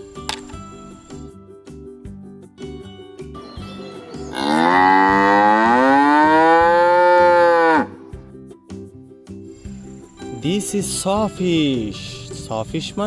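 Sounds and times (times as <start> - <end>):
soft background music: 0.0 - 13.0
cow mooing: 4.3 - 8.0.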